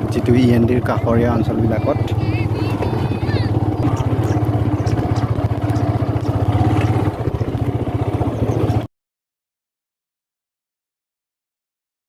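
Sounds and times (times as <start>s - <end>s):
engine running with low throb: 0.0s - 8.9s.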